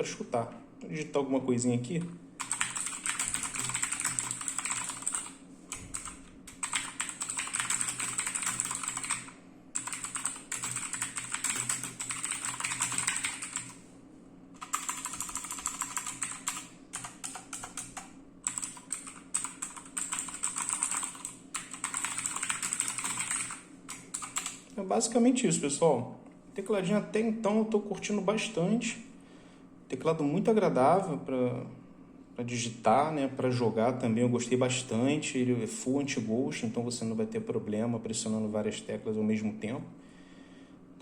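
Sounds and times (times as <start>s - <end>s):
typing on a mechanical keyboard: 2.4s - 13.8s, 14.6s - 24.6s.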